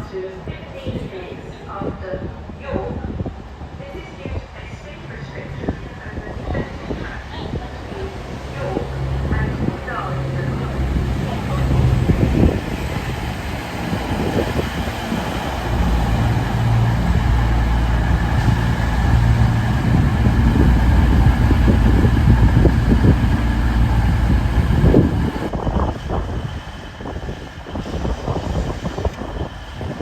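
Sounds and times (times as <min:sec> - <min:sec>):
train engine humming: 0:00.2 - 0:30.0
rumble: 0:08.0 - 0:30.0.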